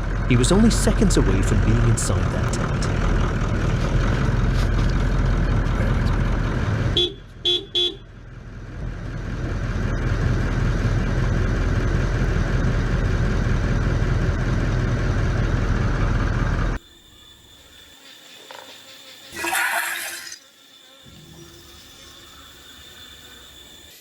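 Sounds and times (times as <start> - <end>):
loud steady rumbling: 0.0 - 16.8
short horn toots: 7.0 - 8.0.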